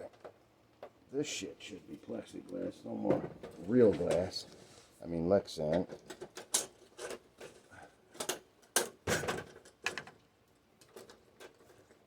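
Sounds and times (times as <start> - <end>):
plastic parts clicking and knocking: 5.7 - 10.2, 10.8 - 12.0.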